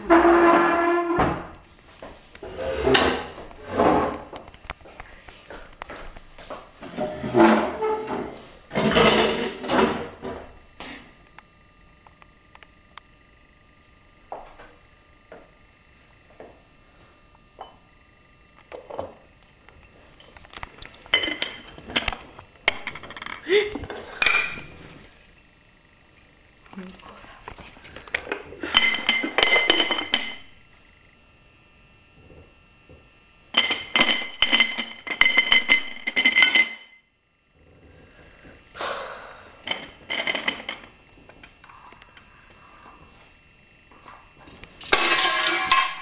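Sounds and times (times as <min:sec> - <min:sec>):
tableware clattering and clinking: 0:06.9 - 0:10.0, 0:20.2 - 0:23.4, 0:24.2 - 0:24.8, 0:28.7 - 0:30.5, 0:33.6 - 0:37.0, 0:39.7 - 0:40.9, 0:44.9 - 0:46.0.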